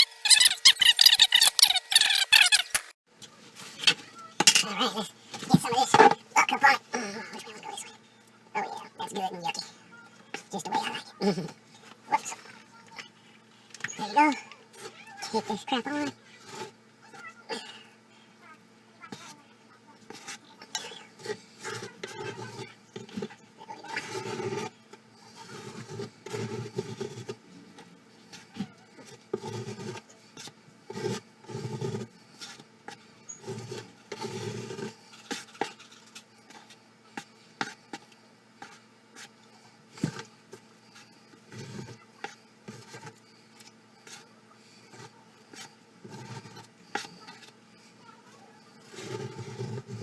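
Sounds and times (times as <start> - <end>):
putty knife scraping spackle: 0.0 - 2.9, 28.4 - 47.6.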